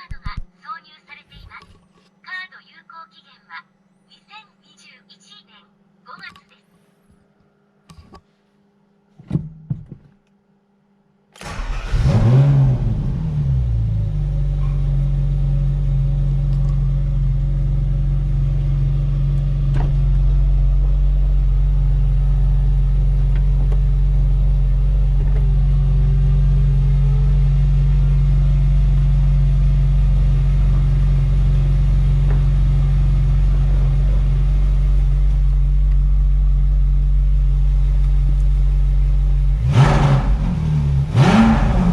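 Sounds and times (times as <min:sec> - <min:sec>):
car engine starting and idling: 0:11.4 - 0:41.9.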